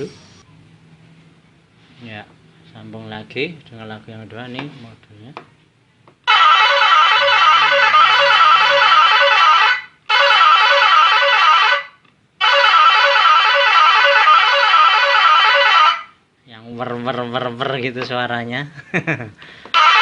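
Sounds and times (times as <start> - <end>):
warbling bus horn melody: 6.3 - 16.2, 19.7 - 20.0.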